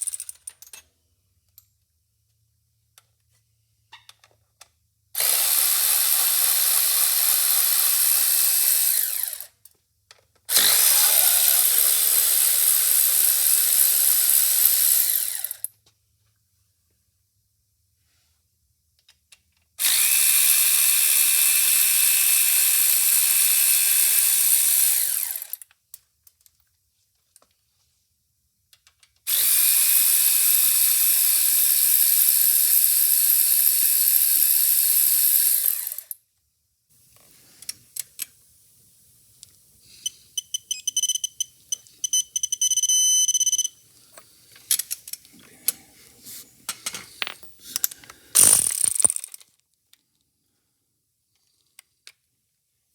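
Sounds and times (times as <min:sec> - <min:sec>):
electric ratchet whirring: 0:05.2 - 0:09.5, 0:10.5 - 0:15.7, 0:19.8 - 0:25.6, 0:29.3 - 0:36.2, 0:47.7 - 0:49.4
ratchet clicking: 0:29.3 - 0:36.2, 0:47.7 - 0:49.4.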